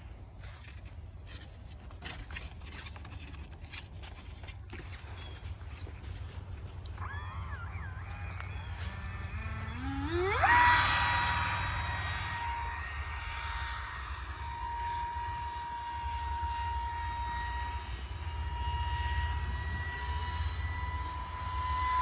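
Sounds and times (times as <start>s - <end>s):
electric ducted fan whine: 0.0s - 22.0s.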